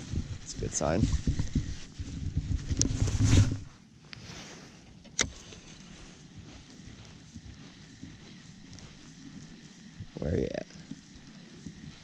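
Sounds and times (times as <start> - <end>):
wind buffeting microphone: 0.0 - 3.7.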